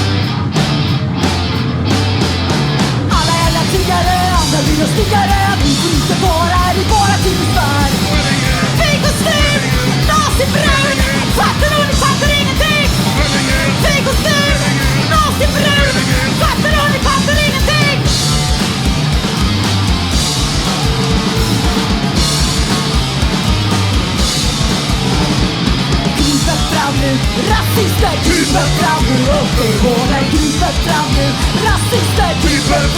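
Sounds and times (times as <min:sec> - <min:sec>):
punk rock band playing live: 0:00.0 - 0:32.9.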